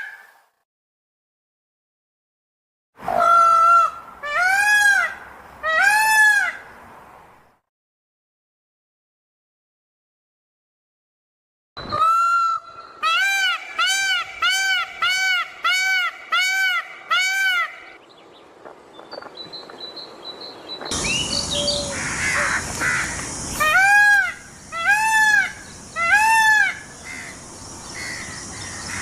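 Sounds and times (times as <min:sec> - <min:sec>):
peacock calling with nasal honks: 0:03.0 - 0:06.7, 0:11.8 - 0:18.0, 0:20.9 - 0:29.0.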